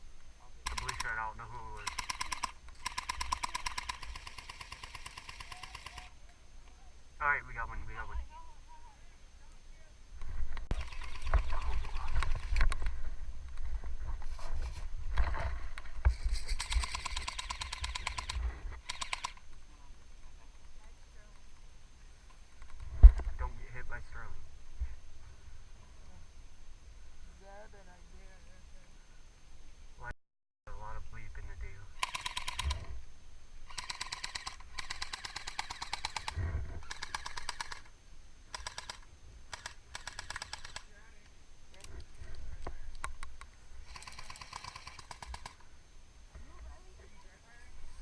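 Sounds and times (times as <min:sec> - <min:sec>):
airsoft gun firing full auto: 0:00.6 - 0:06.2, 0:16.6 - 0:19.4, 0:32.0 - 0:32.9, 0:33.7 - 0:37.9, 0:38.5 - 0:40.9, 0:43.8 - 0:45.6.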